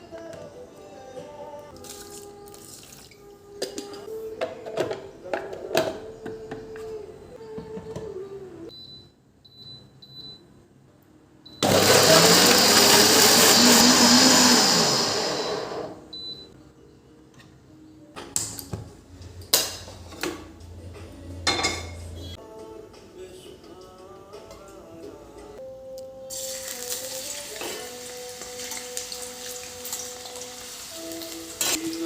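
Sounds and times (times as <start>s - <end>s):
mixer grinder motor running: 11.6s - 16.0s.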